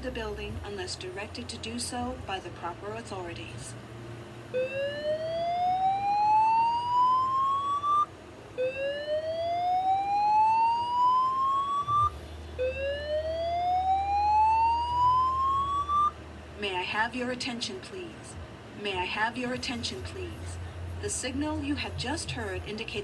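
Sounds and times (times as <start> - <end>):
fire alarm whoop tone: 4.6 - 16.2.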